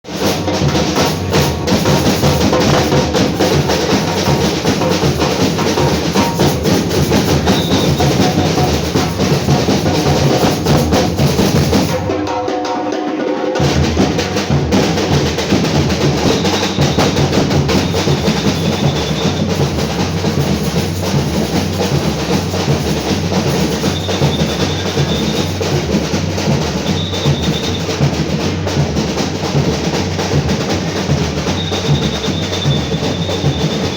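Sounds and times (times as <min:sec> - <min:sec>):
deep bass drums: 0:00.0 - 0:12.0, 0:13.6 - 0:33.9
crisp snare drums: 0:00.0 - 0:33.9
samba percussion ensemble drumming: 0:00.0 - 0:33.9.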